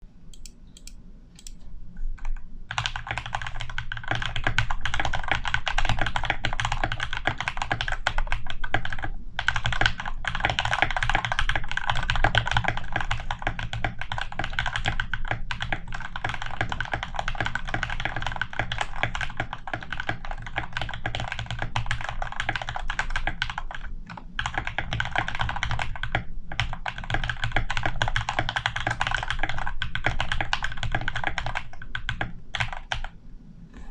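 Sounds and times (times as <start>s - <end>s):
mechanical keyboard typing: 0.3s - 1.6s, 2.2s - 33.1s.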